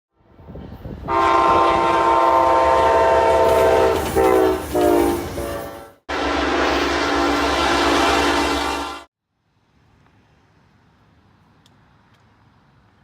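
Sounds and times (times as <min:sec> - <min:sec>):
train noise: 0:00.2 - 0:09.1
locomotive air horn blasts: 0:01.1 - 0:09.1.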